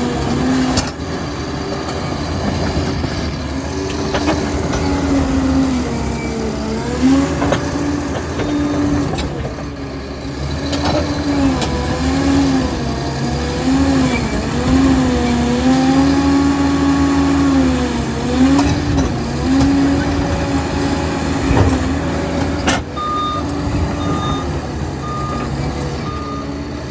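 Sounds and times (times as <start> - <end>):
dozer diesel engine revving: 0.0 - 26.9
reversing alarm beeping: 23.0 - 26.6.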